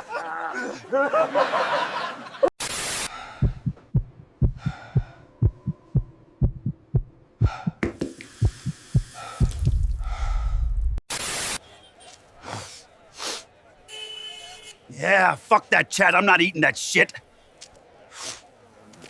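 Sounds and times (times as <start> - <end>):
breathy noises: 3.1 - 6.1, 7.4 - 7.8, 8.4 - 11.0
low rumble: 3.4 - 7.1
dull low thumps: 3.4 - 11.0.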